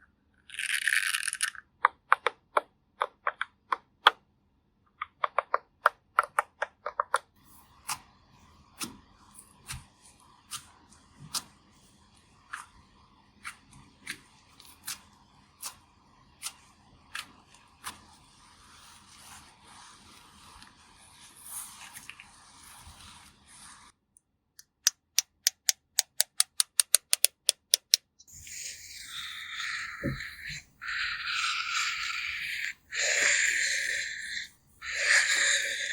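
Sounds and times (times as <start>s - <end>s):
sharp clicks or snips: 24.6s - 28.1s.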